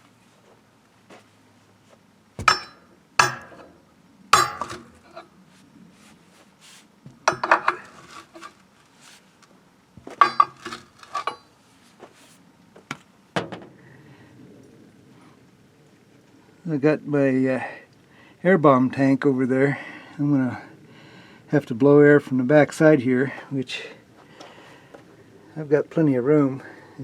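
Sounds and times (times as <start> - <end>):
metal-on-metal clanks: 2.4 - 3.8, 4.4 - 5.2, 7.2 - 8.5, 10.0 - 11.5.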